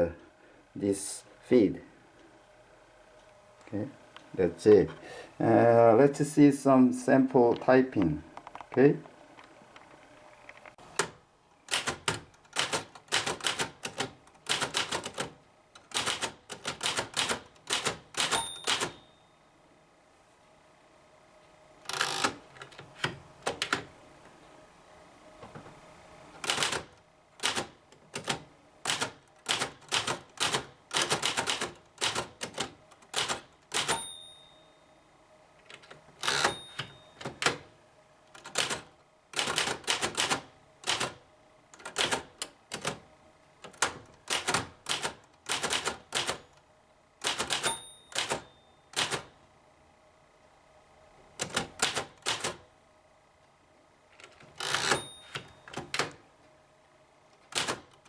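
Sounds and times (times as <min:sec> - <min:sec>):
typewriter type-bar clacks: 0:11.0 - 0:19.0, 0:26.4 - 0:34.0, 0:38.4 - 0:41.2, 0:41.8 - 0:43.0, 0:43.6 - 0:46.5, 0:47.2 - 0:49.3, 0:51.4 - 0:52.6, 0:57.5 - 0:58.0
typewriter margin bell ringing: 0:18.2 - 0:19.3, 0:33.8 - 0:34.8, 0:36.3 - 0:37.3, 0:47.5 - 0:49.1, 0:54.7 - 0:55.8.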